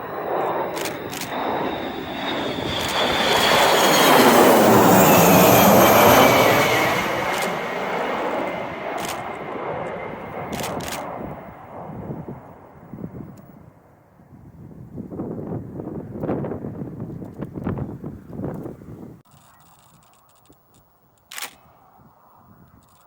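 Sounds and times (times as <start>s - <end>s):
jet passing overhead: 0.0s - 14.3s
sharp clicks: 0.7s - 1.4s, 9.0s - 9.4s, 10.5s - 11.2s, 19.3s - 21.8s.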